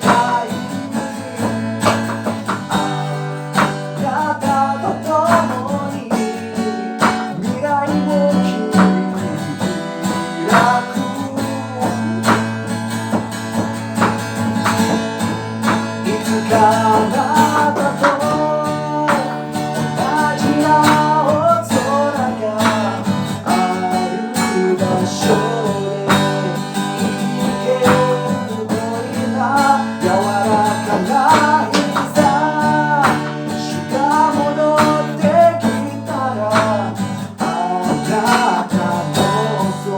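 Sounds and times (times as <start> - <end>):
drum hits: 0.0 - 4.2, 8.7 - 11.1, 11.8 - 22.0, 29.6 - 35.9
guitar melody: 0.0 - 39.9.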